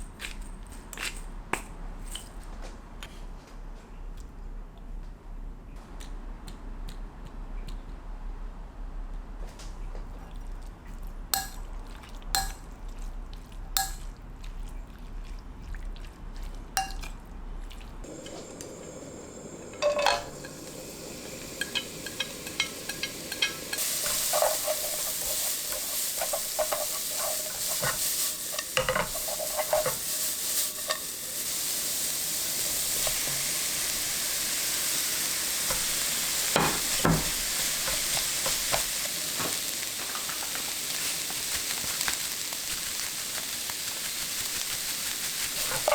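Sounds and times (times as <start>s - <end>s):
food sizzling in a pan: 12.4s - 12.6s, 13.8s - 14.0s, 18.0s - 45.9s
utensil scraping a pan: 21.6s - 30.1s, 45.6s - 45.9s.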